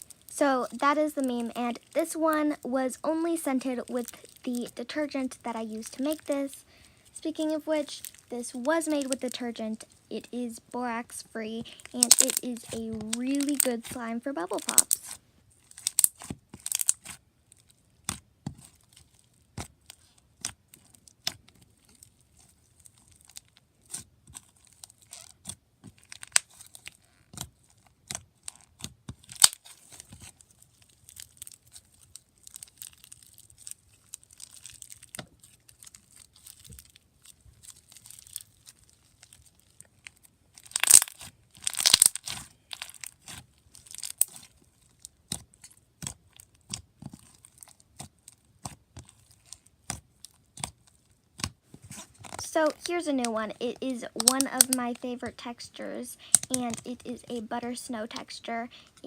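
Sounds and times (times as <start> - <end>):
slime squished by hand: 11.6 - 53.5.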